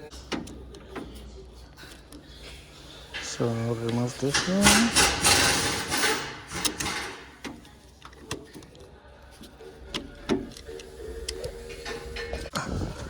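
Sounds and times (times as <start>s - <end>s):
sharp clicks and knocks: 0.2s - 1.2s, 3.9s - 8.8s
metal latch scraping rattle: 3.2s - 7.6s.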